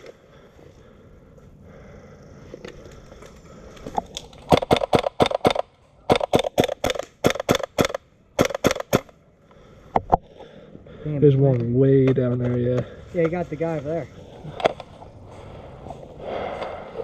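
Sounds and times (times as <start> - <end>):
airsoft rifle rapid shots: 4.5 - 9.1.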